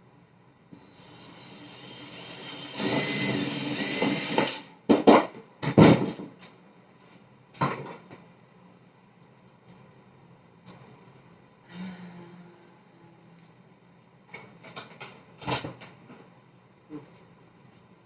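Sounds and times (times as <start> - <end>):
power drill whining: 0.8 - 4.7.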